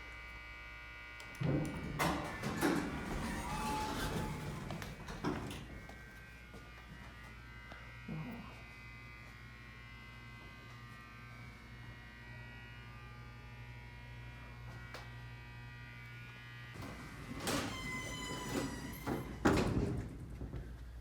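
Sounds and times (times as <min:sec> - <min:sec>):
elevator electrical buzzing hum: 0:00.0 - 0:21.0.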